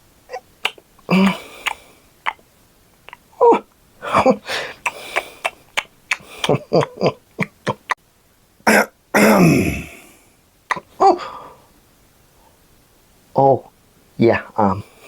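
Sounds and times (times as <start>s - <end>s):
puppet grunts and clicks: 0.3s - 2.4s, 3.0s - 8.0s, 10.7s - 11.0s
long falling burp: 8.6s - 11.2s.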